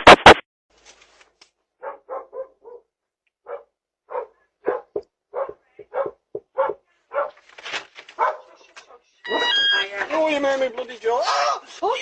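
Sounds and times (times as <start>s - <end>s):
dog barking: 1.8s - 7.4s, 8.2s - 9.5s.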